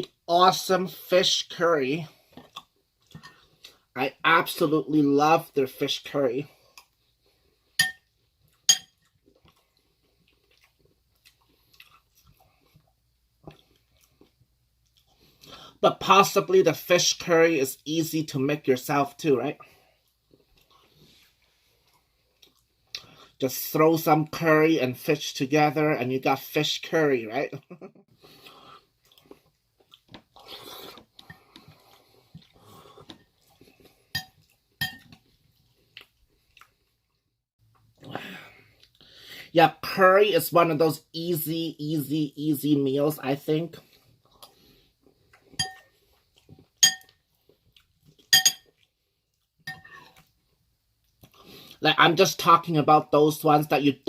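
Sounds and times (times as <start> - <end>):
soft chewing: 2.1 - 3.9, 6.4 - 15.8, 19.5 - 23.4, 27.6 - 39.3, 43.8 - 51.8
utensil clinking against dish: 34.2 - 35.1, 45.6 - 45.9, 46.8 - 47.1.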